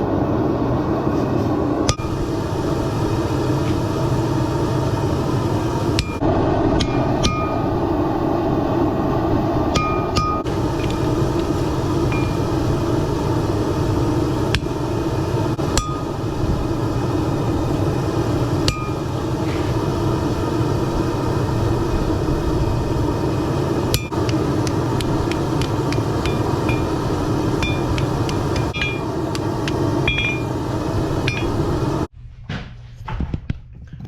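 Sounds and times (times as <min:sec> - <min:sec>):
forge rushing noise: 0:00.0 - 0:32.1
hammer striking steel: 0:06.0 - 0:06.2, 0:06.8 - 0:07.7, 0:09.7 - 0:11.5, 0:12.1 - 0:12.5, 0:15.7 - 0:16.2, 0:18.7 - 0:19.7, 0:23.9 - 0:30.5, 0:31.2 - 0:31.6.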